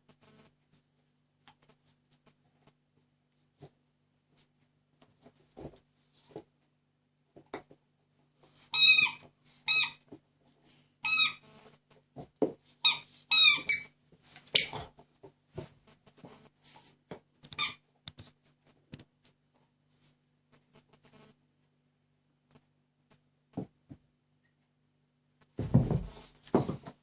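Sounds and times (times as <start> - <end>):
squeaky dog toy squeaking: 8.7 - 10.0, 11.0 - 11.4, 12.8 - 14.0, 17.5 - 17.8.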